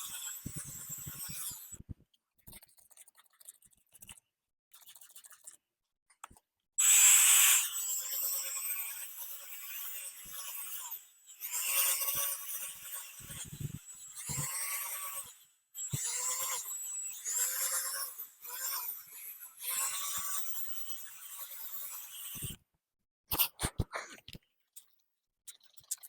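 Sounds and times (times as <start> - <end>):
drill wet-sanding plastic: 6.8 - 7.7.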